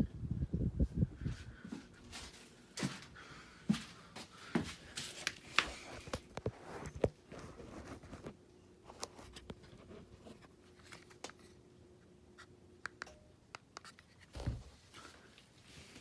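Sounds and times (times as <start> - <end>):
ceiling fan motor hum: 0.0 - 16.0
dull thump: 14.4 - 14.7.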